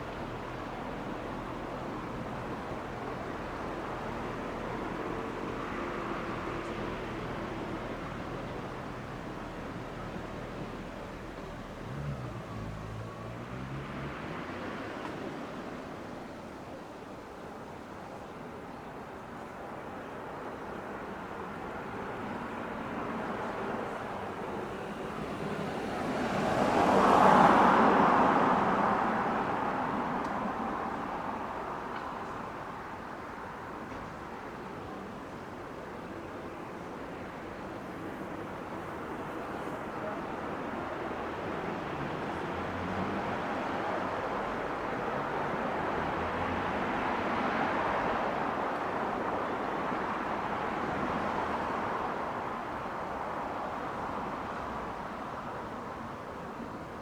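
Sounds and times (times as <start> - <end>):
vehicles driving past: 5.2 - 16.0, 22.8 - 32.4, 37.3 - 57.0
vehicle driving past: 11.7 - 14.5.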